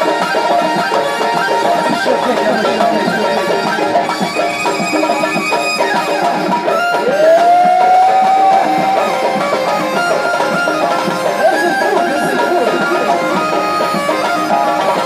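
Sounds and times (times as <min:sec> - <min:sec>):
live folk music with percussion: 0:00.0 - 0:15.0.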